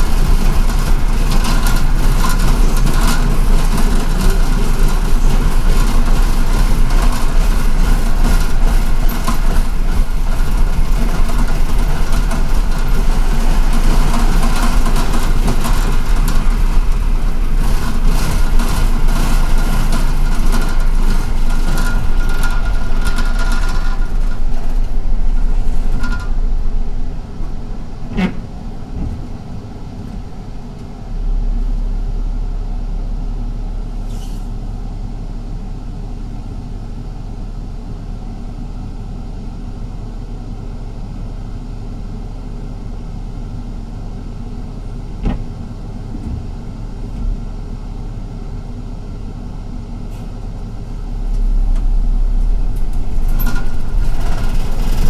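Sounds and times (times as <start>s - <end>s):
rattling: 0.0s - 32.9s, 50.2s - 55.0s
bus engine and road noise: 0.0s - 55.0s.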